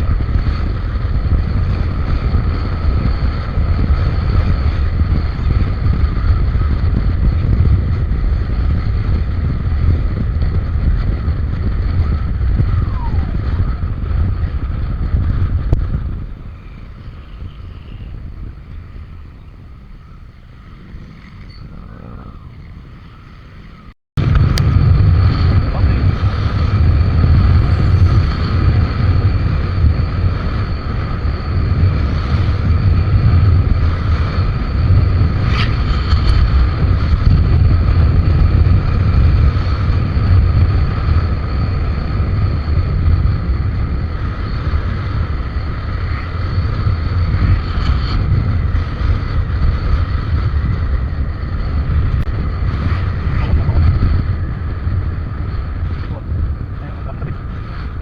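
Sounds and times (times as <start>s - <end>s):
scooter running: 0.0s - 39.6s
wind rushing over microphone: 0.0s - 58.0s.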